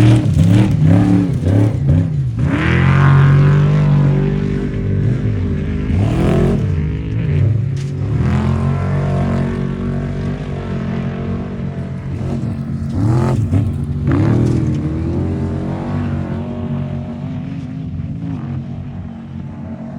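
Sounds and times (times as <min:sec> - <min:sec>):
truck engine revving: 0:00.0 - 0:17.5.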